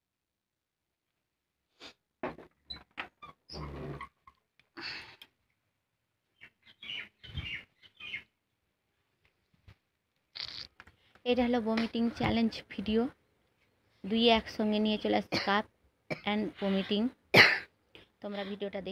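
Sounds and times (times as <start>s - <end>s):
person coughing and gagging: 15.3s - 16.4s, 17.3s - 17.8s.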